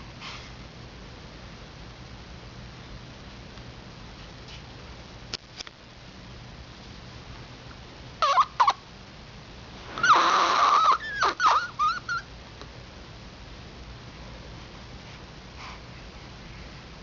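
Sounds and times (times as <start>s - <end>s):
animal squeaking and squawking: 8.2s - 8.8s, 10.0s - 12.3s.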